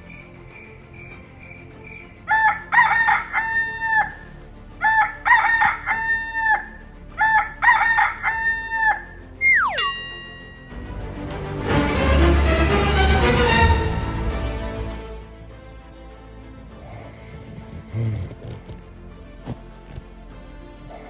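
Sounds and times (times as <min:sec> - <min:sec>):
faint regular chirping: 0:00.0 - 0:02.2
rooster crowing: 0:02.3 - 0:09.8
whistle falling in pitch: 0:09.4 - 0:10.6.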